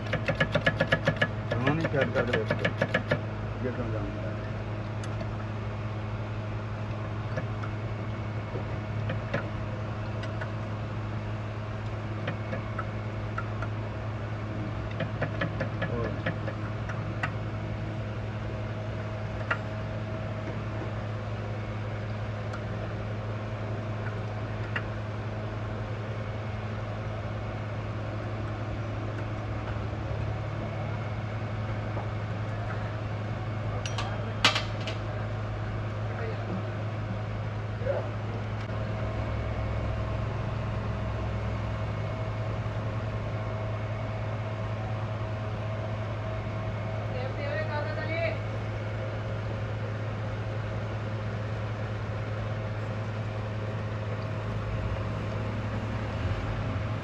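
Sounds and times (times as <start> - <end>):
hand tool clicks and taps: 0.0 - 1.6
low mechanical hum: 0.0 - 57.0.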